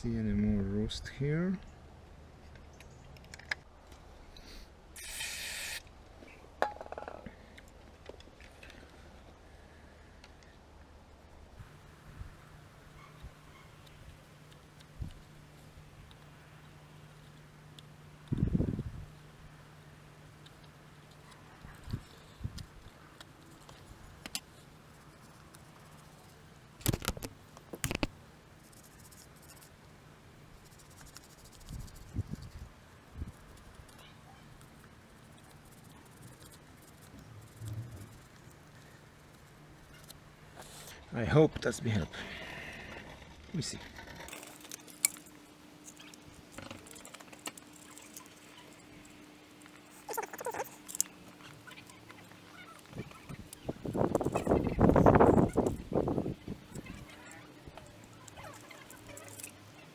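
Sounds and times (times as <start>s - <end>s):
faint steady hum: 0.0s - 41.1s, 44.2s - 59.9s
spray hiss: 5.0s - 5.8s
rattle of small clicks: 20.4s - 28.2s, 44.3s - 59.9s.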